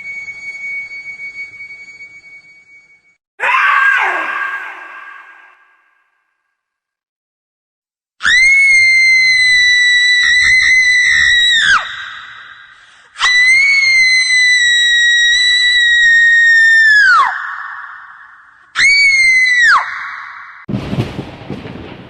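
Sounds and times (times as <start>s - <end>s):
high-pitched screams: 3.4s - 6.1s, 8.2s - 20.6s.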